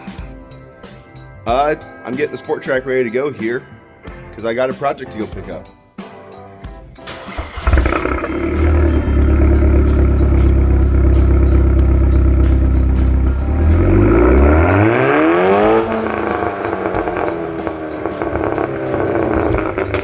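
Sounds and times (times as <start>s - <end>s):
car engine running and revving: 7.3s - 20.0s.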